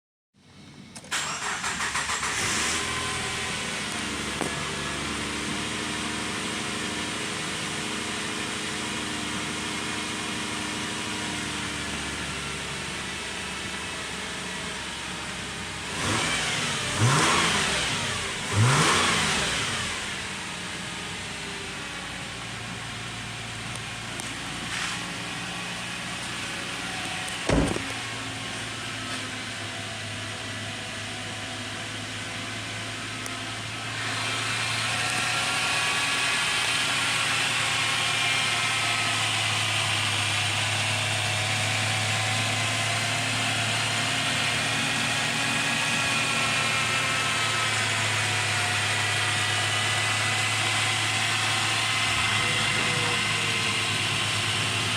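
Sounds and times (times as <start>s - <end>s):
car engine idling: 17.9s - 54.9s
sharp thump: 27.4s - 28.2s.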